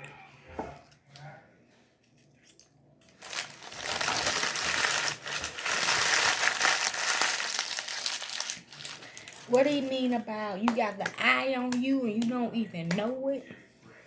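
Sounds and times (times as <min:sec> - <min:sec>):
paper packaging crinkling: 0:03.1 - 0:10.3.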